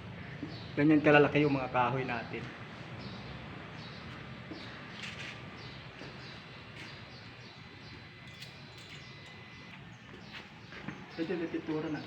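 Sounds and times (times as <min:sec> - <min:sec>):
bird chirping: 0:02.9 - 0:12.0.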